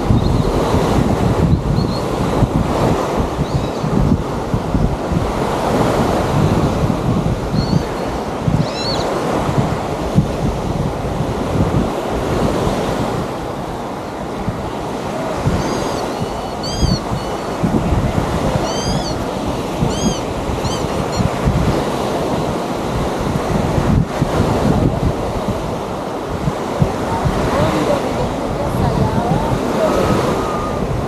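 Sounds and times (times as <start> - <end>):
small waves washing on beach: 0.0 - 31.0
wind on microphone: 0.0 - 31.0
faint high-pitched calls: 7.6 - 9.1, 15.6 - 17.6, 18.6 - 19.2, 19.9 - 21.3.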